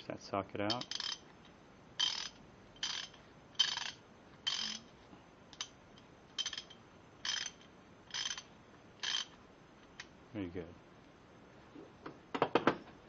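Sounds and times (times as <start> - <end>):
ratchet wrench clicking: 0.7 - 1.3, 2.0 - 4.9, 5.5 - 9.4.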